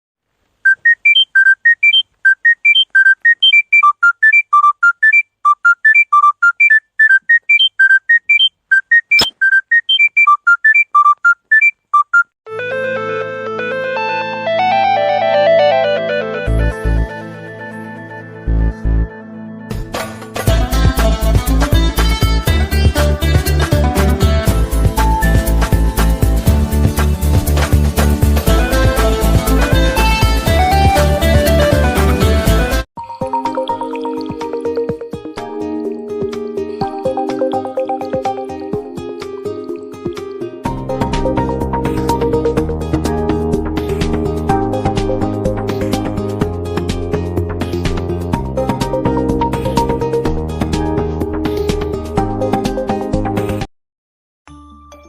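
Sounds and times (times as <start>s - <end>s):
smartphone ringtone melody: 0.7s - 13.6s, 33.0s - 35.1s
sharp click: 9.1s - 10.8s.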